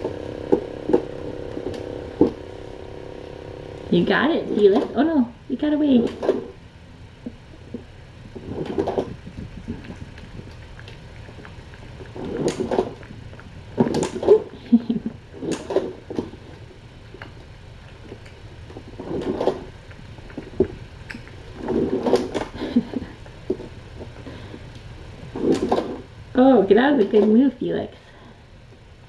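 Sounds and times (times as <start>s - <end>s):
low steady hum: 0.0s - 29.0s
kittens scuffling and thumping: 7.2s - 26.1s.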